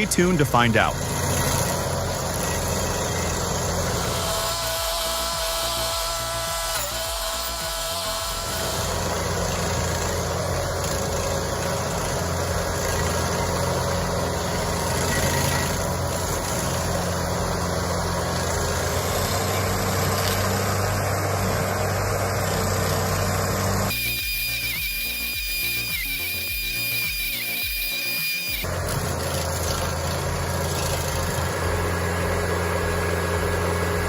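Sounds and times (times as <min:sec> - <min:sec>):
heavy engine running: 0:00.0 - 0:34.0.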